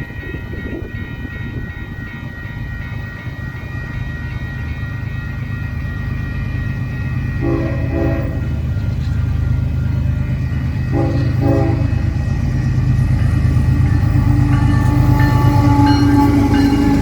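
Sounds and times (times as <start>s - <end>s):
freight train rumbling past: 0.0s - 17.0s
steady pitched tone: 0.0s - 17.0s
locomotive horn blasts: 7.4s - 8.6s, 10.8s - 12.4s, 13.8s - 17.0s.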